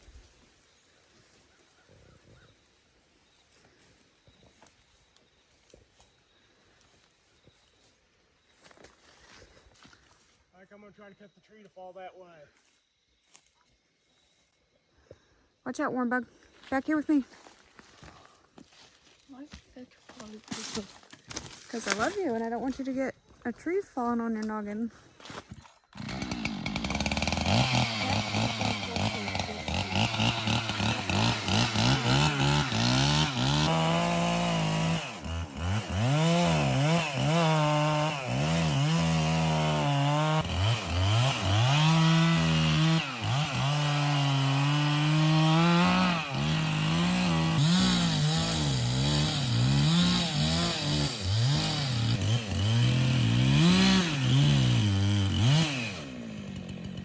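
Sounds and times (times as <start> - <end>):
chainsaw cutting a tree: 25.9 - 57.0.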